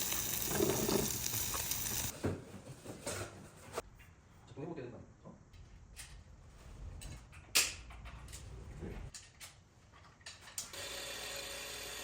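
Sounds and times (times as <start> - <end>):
knocks and clicks in workshop: 7.0 - 8.5.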